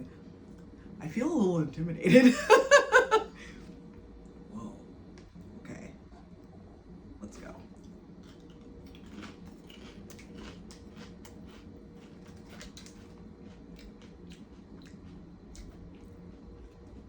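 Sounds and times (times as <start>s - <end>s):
chip crunching and chewing: 7.6s - 17.0s.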